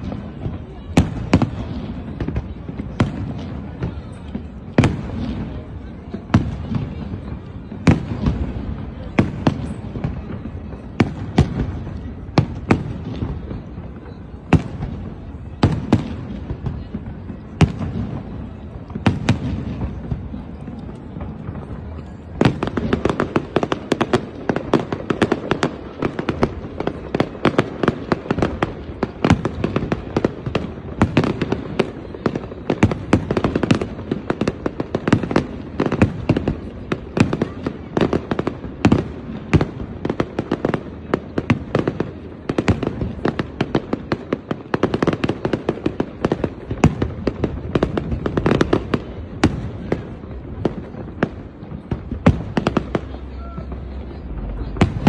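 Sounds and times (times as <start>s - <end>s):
fireworks bursts and cracks: 0.0s - 55.0s.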